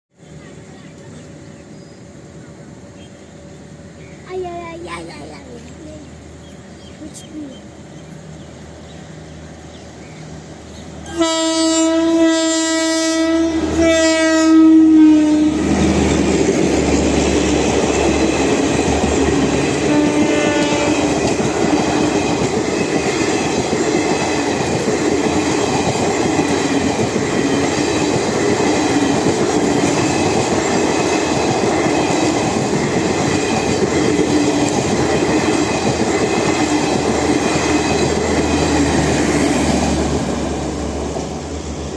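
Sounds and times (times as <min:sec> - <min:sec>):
locomotive air horn: 0:11.1 - 0:15.7, 0:19.9 - 0:21.1
train wheels clickety-clack: 0:15.6 - 0:41.6.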